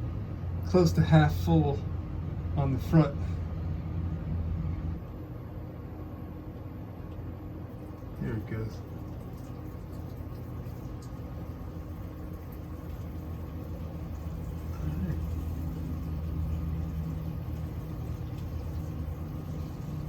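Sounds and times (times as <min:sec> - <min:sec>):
hose water running into tank: 0:07.7 - 0:20.0.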